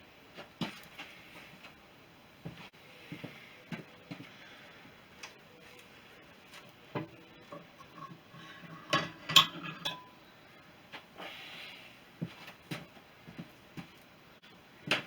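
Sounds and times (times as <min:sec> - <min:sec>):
metal parts knocking and clinking: 0:07.5 - 0:10.1.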